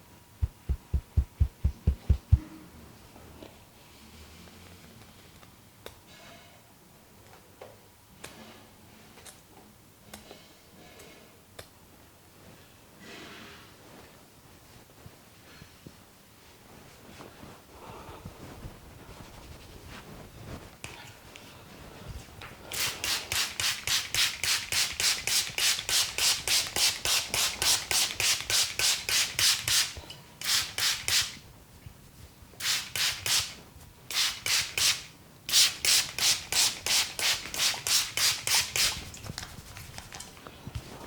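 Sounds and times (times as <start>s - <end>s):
hands rubbing over hair: 0.4s - 2.4s, 18.3s - 20.8s.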